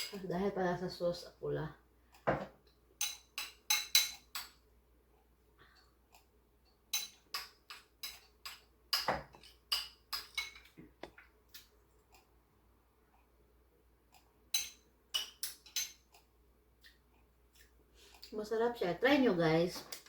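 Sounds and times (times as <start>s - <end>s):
metal utensil clinking on dish: 6.9s - 10.7s, 14.6s - 16.0s.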